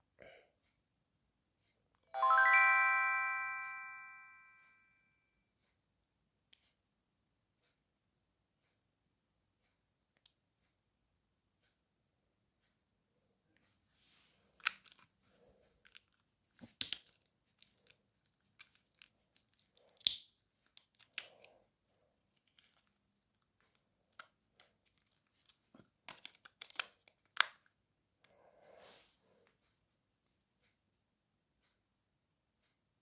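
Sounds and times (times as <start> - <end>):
plastic parts clicking: 14.6 - 15.1, 15.8 - 21.4, 24.1 - 27.7.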